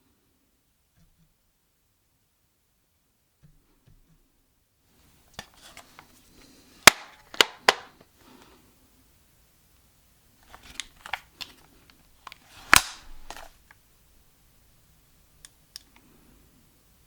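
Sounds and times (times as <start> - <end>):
loud snap of folding stock: 6.9 - 8.0, 12.3 - 13.6
hinge and latch clicks: 12.7 - 13.5.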